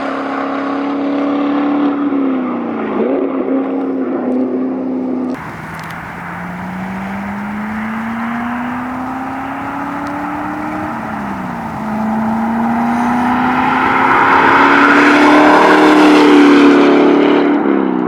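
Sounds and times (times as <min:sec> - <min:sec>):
car engine accelerating hard: 0:05.4 - 0:18.0.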